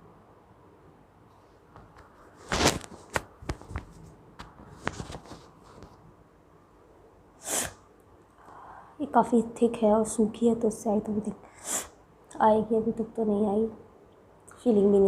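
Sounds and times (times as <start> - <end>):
brief hiss: 7.4 - 7.8.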